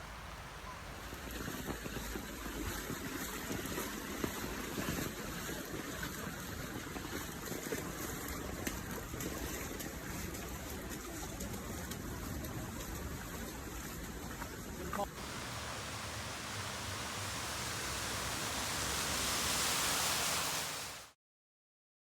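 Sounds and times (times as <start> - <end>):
floodwater rushing: 0.0 - 1.4, 15.2 - 21.2
sharp water splashes: 15.2 - 21.2.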